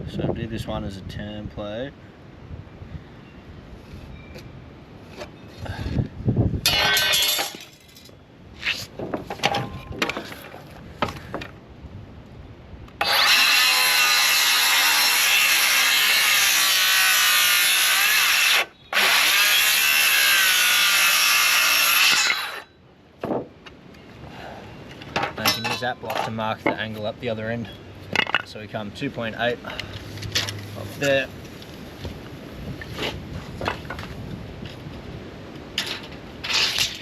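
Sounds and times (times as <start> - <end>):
power saw cutting timber: 13.0 - 22.7.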